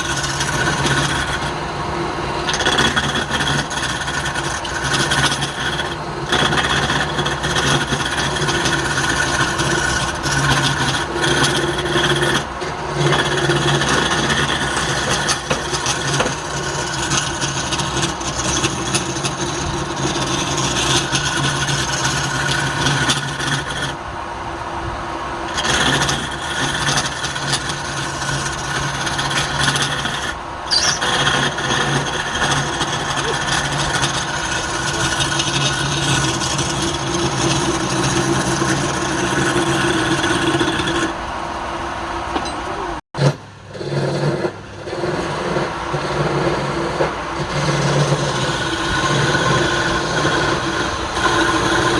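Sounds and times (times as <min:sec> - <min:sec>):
rasping of wood being scraped: 0:00.0 - 0:01.7, 0:02.3 - 0:24.0, 0:25.4 - 0:41.2, 0:43.2 - 0:51.9
lathe motor hum: 0:00.0 - 0:51.9.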